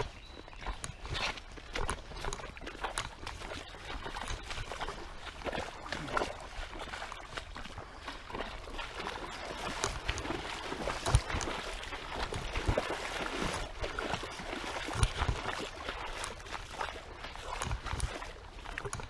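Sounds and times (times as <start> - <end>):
small clicks: 0.0 - 4.7, 9.7 - 10.3, 10.9 - 11.6, 18.7 - 19.0
creek water splashing: 0.0 - 19.0.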